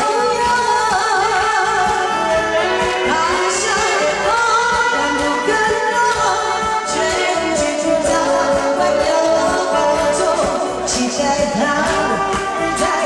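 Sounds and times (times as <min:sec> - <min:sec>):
slow pop ballad: 0:00.0 - 0:13.0.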